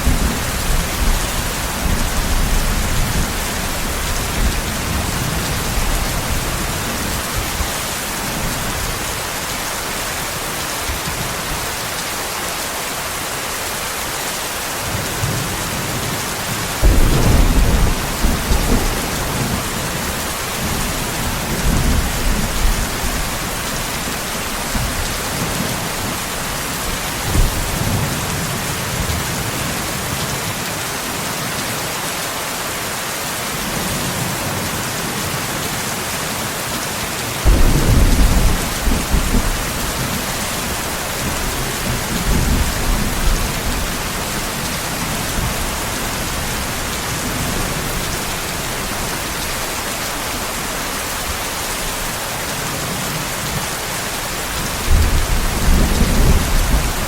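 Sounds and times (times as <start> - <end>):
heavy rain: 0.0 - 57.0
thunder clap rumbling: 16.8 - 23.9, 24.6 - 28.2, 37.4 - 47.8.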